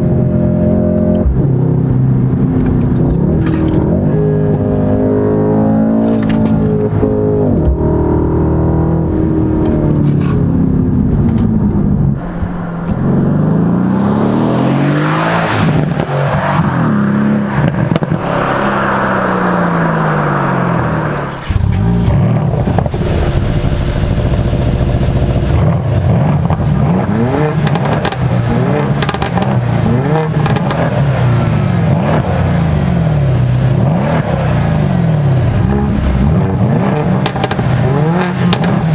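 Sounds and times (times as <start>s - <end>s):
car engine revving and accelerating: 0.0s - 38.9s.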